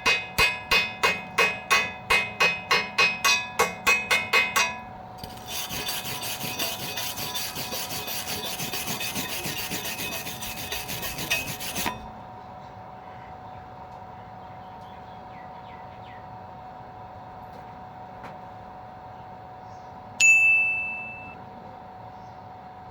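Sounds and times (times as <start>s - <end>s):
ringing metal strikes: 0.0s - 4.9s
fast rasping scrub: 5.2s - 12.1s.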